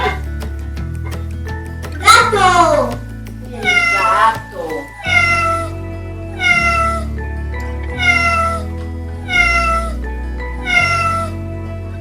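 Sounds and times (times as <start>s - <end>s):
background music: 0.0s - 12.0s
cat meowing: 3.6s - 7.1s, 8.0s - 10.0s, 10.6s - 11.4s.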